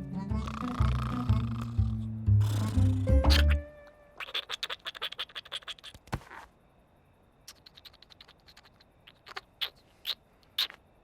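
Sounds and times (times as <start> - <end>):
faint scattered ticks: 3.4 - 11.0.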